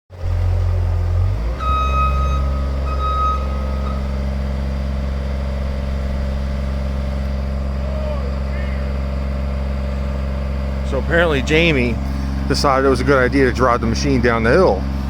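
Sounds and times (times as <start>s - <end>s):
loader diesel engine running: 0.1s - 15.0s
alarm beeping: 1.5s - 4.8s.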